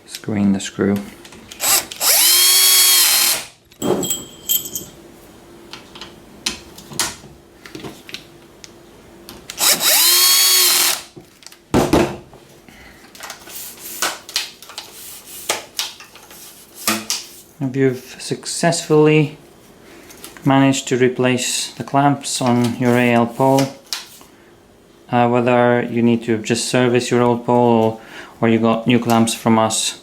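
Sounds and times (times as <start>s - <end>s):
power drill whining: 1.6s - 3.5s, 9.6s - 11.1s
handling clicks and knocks: 3.7s - 5.0s.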